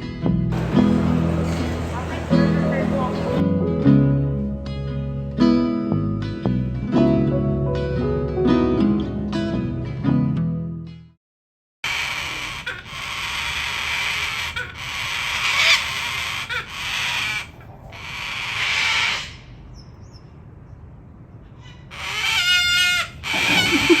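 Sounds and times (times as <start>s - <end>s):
birds screeching: 0.6s - 3.4s, 11.9s - 20.3s, 21.5s - 24.0s
fast rattling bird call: 11.9s - 19.4s, 21.9s - 24.0s.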